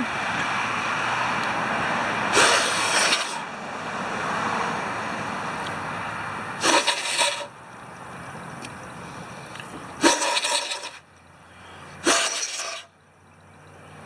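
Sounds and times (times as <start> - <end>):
compressed air blasts: 2.3 - 3.5, 6.6 - 7.6, 10.0 - 11.0, 11.9 - 12.9.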